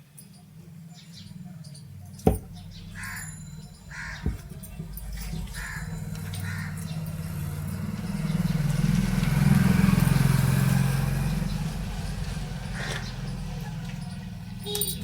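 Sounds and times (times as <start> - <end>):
vehicle engine passing by: 2.5 - 15.0
crow cawing: 2.9 - 7.6, 12.7 - 13.4.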